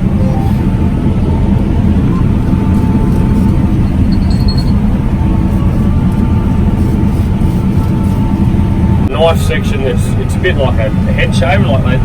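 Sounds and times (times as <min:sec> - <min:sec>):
combine harvester running: 0:00.0 - 0:12.0
faint steady whine: 0:00.0 - 0:12.0
short high beep: 0:00.2 - 0:00.7.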